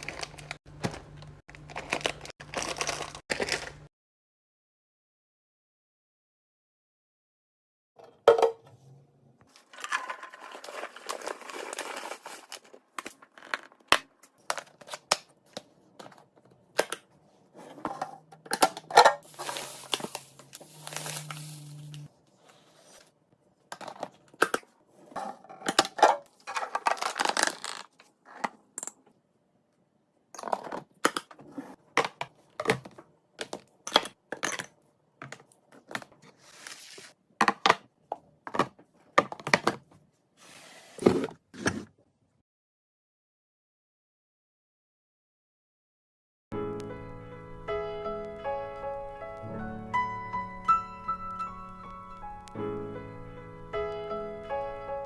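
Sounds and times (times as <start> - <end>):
items clicking and clinking: 0.0 - 3.9, 9.5 - 22.1, 23.7 - 29.2, 30.3 - 36.3
packaging rustling and crinkling: 0.0 - 3.9, 9.5 - 15.2, 19.2 - 22.1, 26.4 - 28.0.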